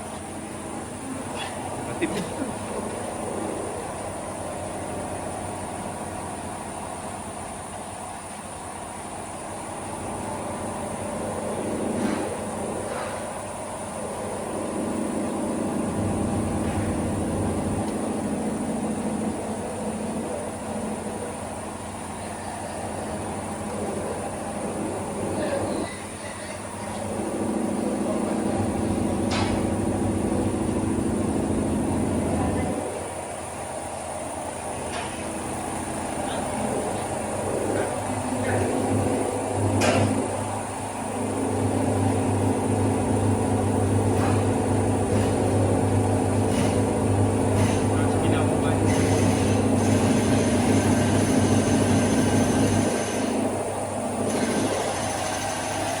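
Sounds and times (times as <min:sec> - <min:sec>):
mechanical drone with low hum: 0:00.0 - 0:56.0.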